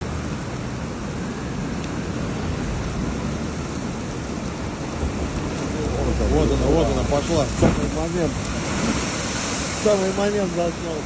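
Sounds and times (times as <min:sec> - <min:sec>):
floodwater rushing: 0:00.0 - 0:11.0.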